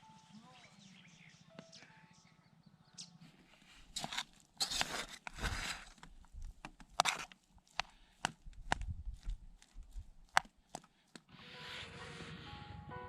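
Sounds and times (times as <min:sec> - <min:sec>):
rustling: 0:03.4 - 0:11.3
sharp clicks and light knocks: 0:04.0 - 0:11.3.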